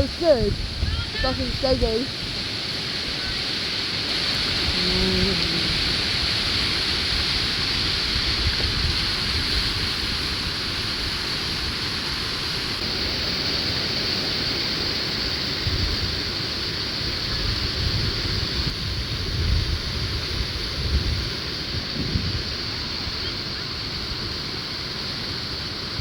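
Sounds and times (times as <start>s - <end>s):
whitewater rapids rushing: 0.0s - 15.6s.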